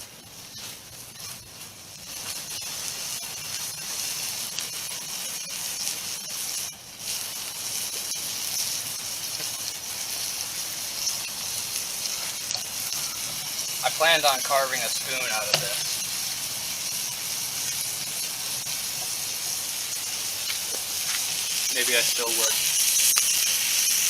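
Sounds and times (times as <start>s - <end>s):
burger patty sizzling in a pan: 0.0s - 24.0s.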